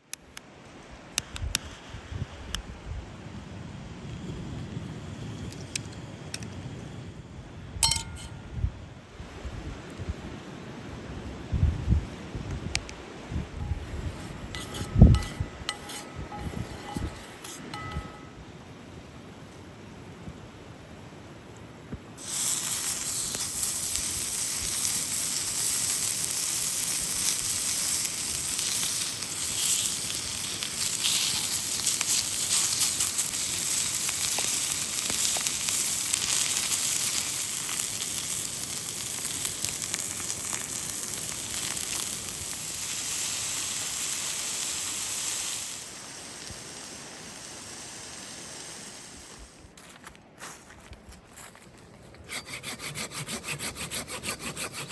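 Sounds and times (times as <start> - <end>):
food sizzling in a pan: 22.2 - 49.6.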